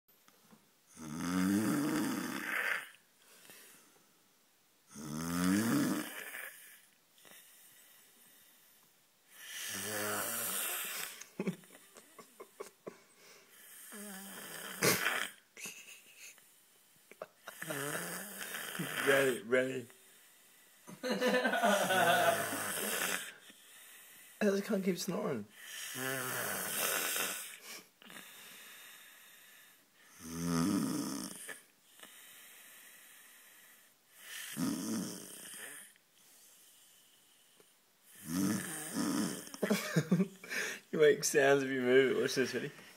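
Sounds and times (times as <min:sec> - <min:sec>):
man snoring: 0:00.9 - 0:03.0, 0:04.9 - 0:06.8, 0:09.4 - 0:11.2, 0:13.6 - 0:15.4, 0:17.4 - 0:19.8, 0:21.0 - 0:23.4, 0:25.6 - 0:32.4, 0:34.2 - 0:36.0, 0:38.1 - 0:39.7.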